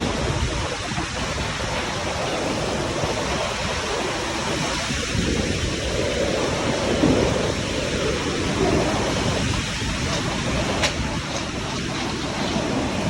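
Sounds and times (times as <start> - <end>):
rushing water: 0.0 - 13.0
wind: 0.0 - 13.0.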